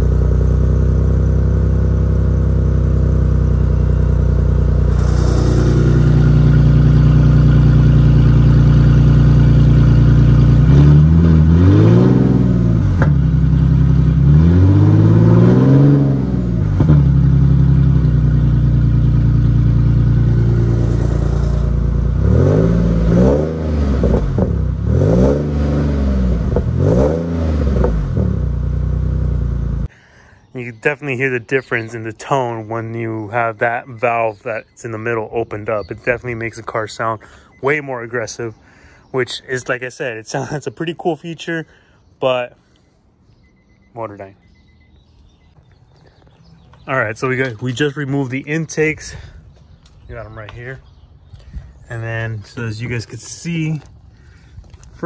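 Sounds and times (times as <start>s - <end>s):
car engine idling and revving: 0.0s - 29.9s.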